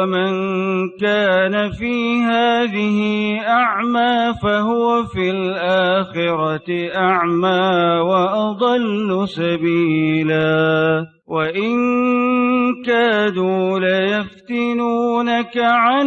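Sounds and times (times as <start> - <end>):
man reciting melodically: 0.0 - 16.0.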